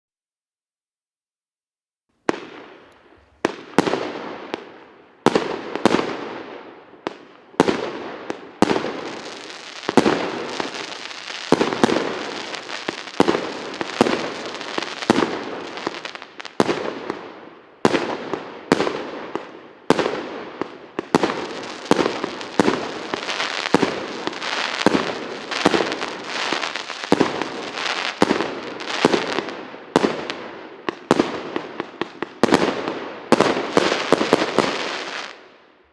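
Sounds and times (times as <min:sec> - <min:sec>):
dense firework crackling: 0:07.6 - 0:35.5.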